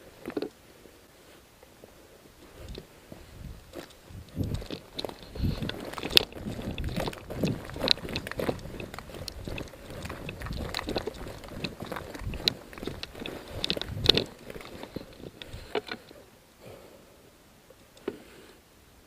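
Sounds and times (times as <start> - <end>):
footsteps: 2.3 - 16.2
soft low thumps: 2.4 - 15.8
gear rustling: 2.4 - 16.2.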